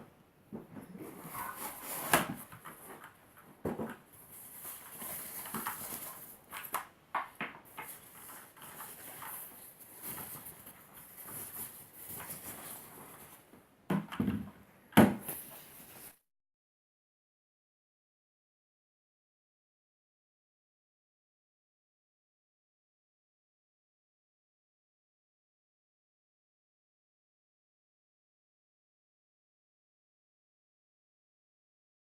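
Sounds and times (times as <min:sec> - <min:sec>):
packaging rustling: 0:04.3 - 0:06.8.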